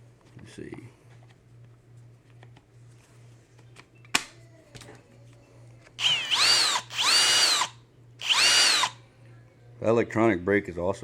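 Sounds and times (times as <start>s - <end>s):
drill motor whine: 6.0s - 9.0s.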